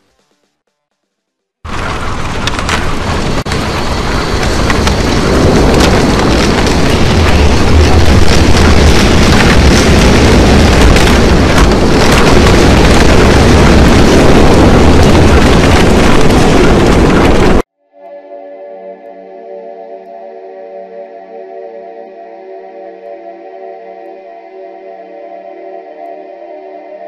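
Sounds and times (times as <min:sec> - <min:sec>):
deep rumble: 0:01.7 - 0:17.7
scattered crackles: 0:01.7 - 0:17.7
wind and rain rushing: 0:01.7 - 0:17.7.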